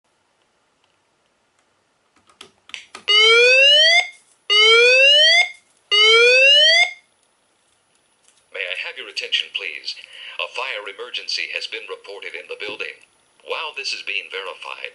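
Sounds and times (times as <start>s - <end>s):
fire alarm whoop siren: 3.1s - 7.0s.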